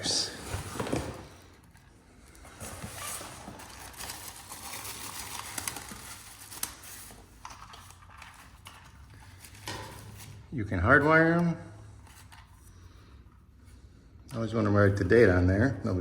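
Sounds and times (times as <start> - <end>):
packaging crinkling and rustling: 0.2 - 10.5.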